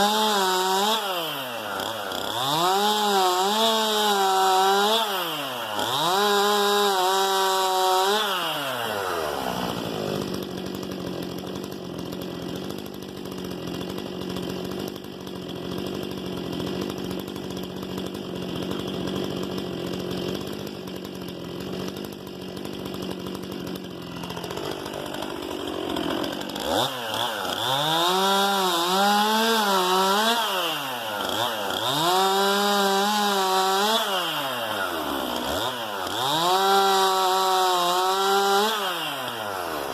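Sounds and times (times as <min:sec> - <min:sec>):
chainsaw cutting and idling: 0:00.0 - 0:39.9.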